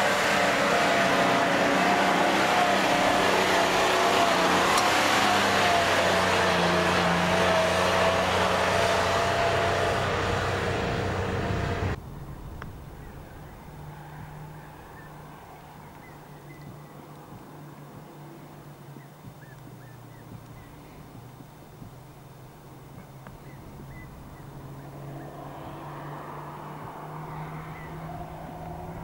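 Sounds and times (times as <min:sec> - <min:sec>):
vehicle engine and road noise: 0:00.0 - 0:29.0
low hum: 0:06.4 - 0:29.0.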